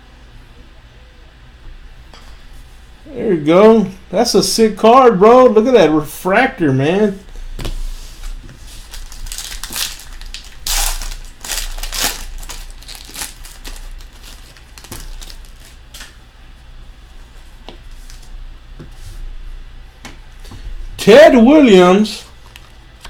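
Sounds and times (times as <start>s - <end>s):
plastic packaging crinkling: 8.6s - 16.1s.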